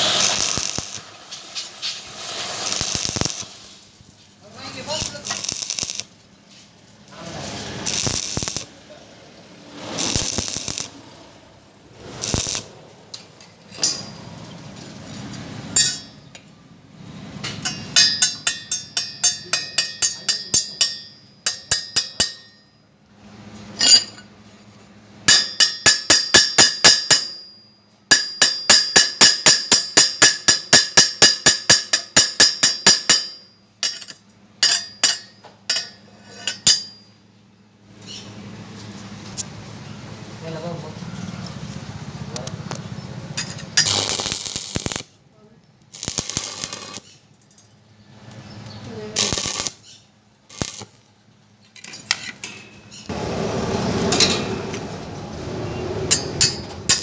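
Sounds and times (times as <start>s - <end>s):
ringing metallic taps: 17.5s - 22.8s.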